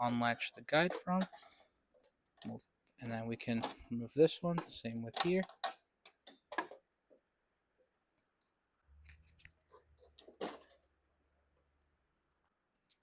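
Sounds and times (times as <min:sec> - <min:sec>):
plastic clicks and rustles: 0:00.8 - 0:02.6, 0:04.6 - 0:07.2, 0:08.3 - 0:10.8.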